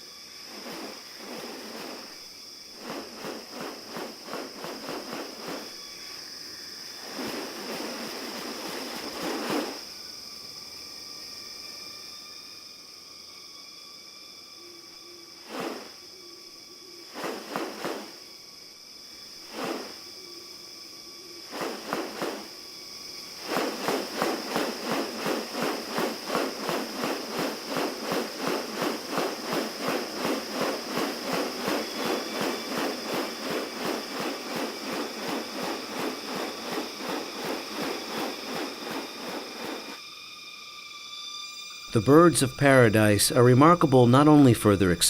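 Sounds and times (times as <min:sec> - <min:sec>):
high insect drone: 0:00.0 - 0:45.0
fast rasping pulses: 0:21.5 - 0:22.6, 0:23.2 - 0:40.0.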